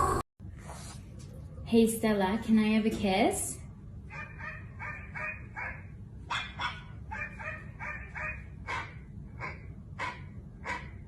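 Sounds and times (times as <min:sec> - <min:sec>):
dog barking: 0:04.1 - 0:11.0.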